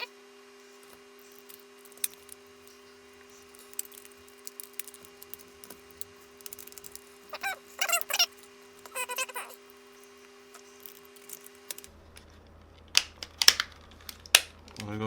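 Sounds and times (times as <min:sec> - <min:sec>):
steady low hum: 0:00.0 - 0:15.0
short pitched squeaks: 0:07.2 - 0:11.0.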